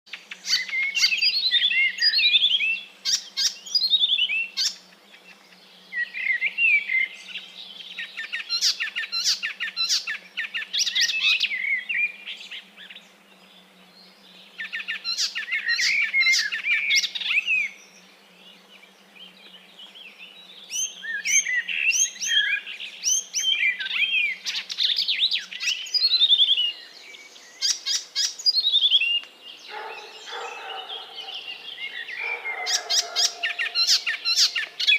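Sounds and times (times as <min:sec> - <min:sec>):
parrots chirping: 0:29.7 - 0:34.9.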